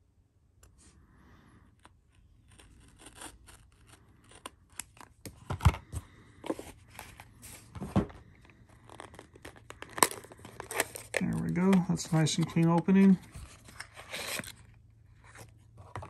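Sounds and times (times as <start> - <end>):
packaging tearing and crinkling: 2.4 - 5.2, 8.7 - 15.5.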